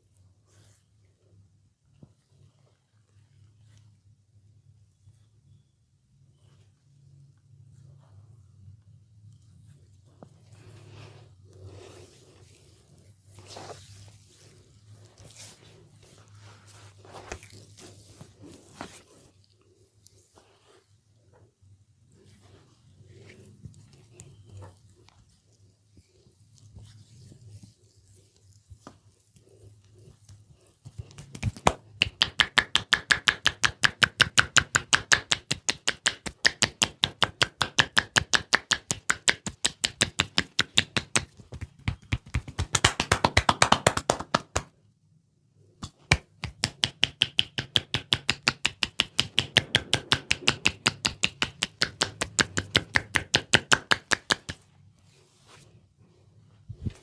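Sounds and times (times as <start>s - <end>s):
hands striking head rapidly: 31.1s - 44.7s, 45.8s - 54.6s.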